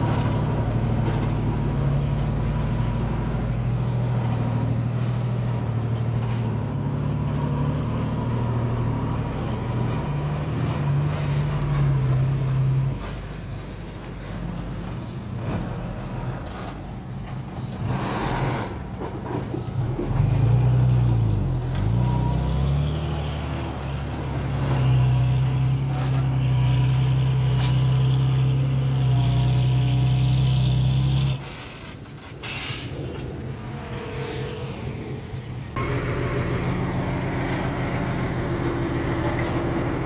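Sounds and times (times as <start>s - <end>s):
heavy diesel engine working: 0.0s - 40.0s
short hisses: 32.4s - 33.0s.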